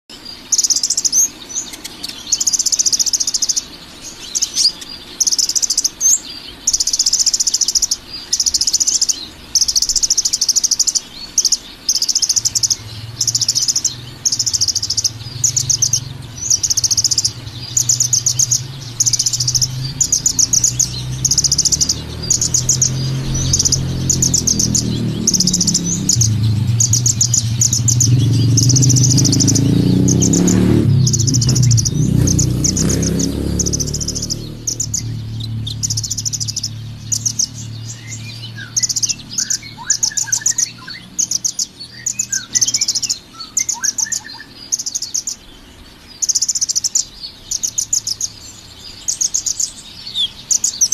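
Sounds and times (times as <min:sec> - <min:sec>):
songbird trilling: 0:00.1 - 0:50.9
low hum: 0:12.8 - 0:39.8.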